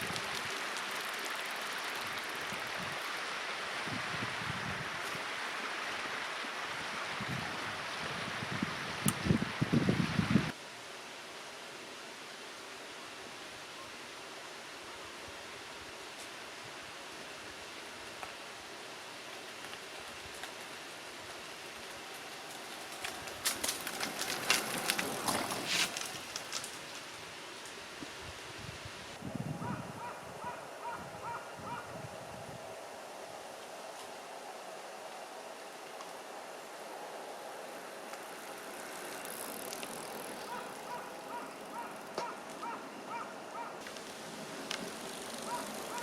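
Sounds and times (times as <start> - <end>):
bicycle rushing noise: 0.0 - 5.4, 19.3 - 28.8, 37.2 - 42.4, 43.8 - 46.0
steady hiss: 0.0 - 30.8, 31.9 - 46.0.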